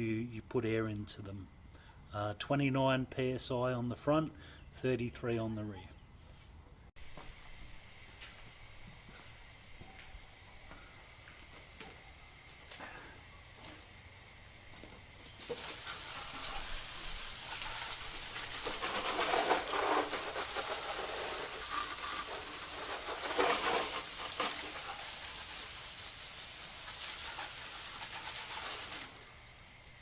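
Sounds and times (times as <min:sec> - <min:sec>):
compressed air hissing: 0:15.3 - 0:29.9.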